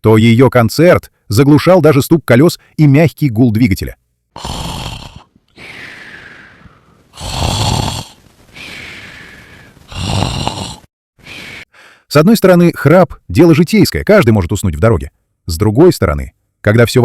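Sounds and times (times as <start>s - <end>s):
person snoring: 4.4s - 11.7s
soft breathing: 5.1s - 7.4s, 8.0s - 12.1s.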